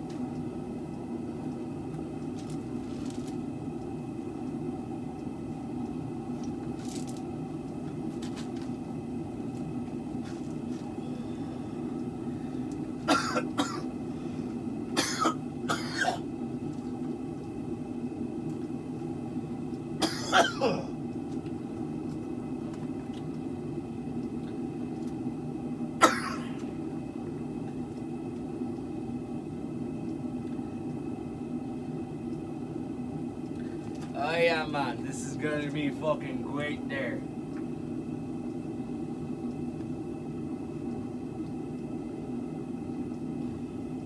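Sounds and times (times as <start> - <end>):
steady low hum: 0.0 - 44.0
man coughing and clearing throat: 13.1 - 13.9, 15.0 - 16.2, 20.0 - 21.0, 26.0 - 26.6.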